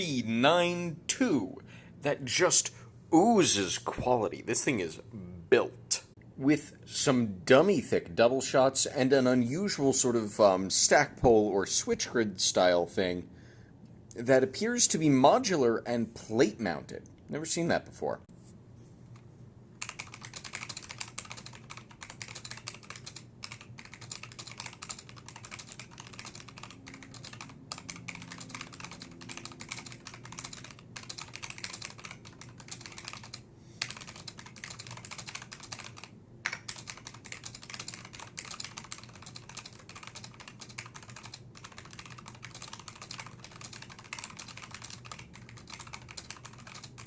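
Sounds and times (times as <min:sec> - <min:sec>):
keyboard typing: 0:19.8 - 0:47.0.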